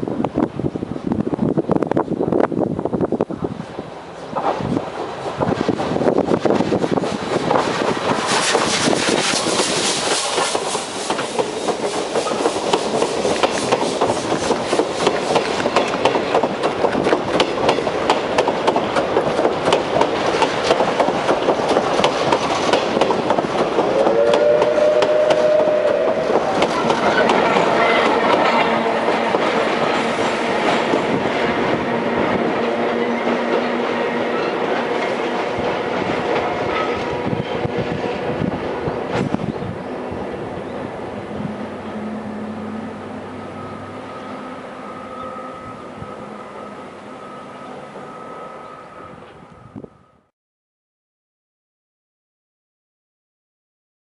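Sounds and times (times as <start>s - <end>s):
steam train passing: 0.0s - 50.3s
steady tone: 40.9s - 50.3s.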